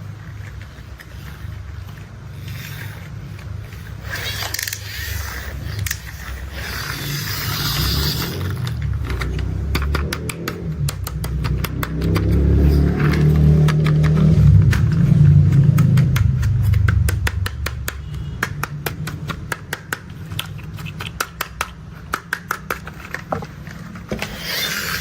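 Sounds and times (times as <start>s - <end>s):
hissy scraping: 0.0s - 9.0s
sharp clicks and clanks: 0.0s - 25.0s.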